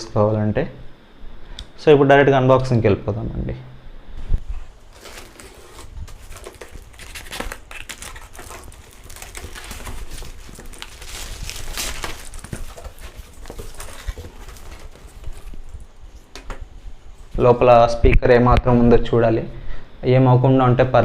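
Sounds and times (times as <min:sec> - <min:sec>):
plastic wrapping crinkling and tearing: 0:04.7 - 0:16.6.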